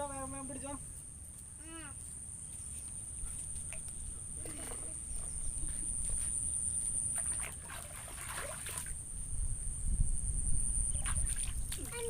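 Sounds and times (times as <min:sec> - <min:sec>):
water trickling and sloshing: 0:03.4 - 0:09.4, 0:10.8 - 0:12.0.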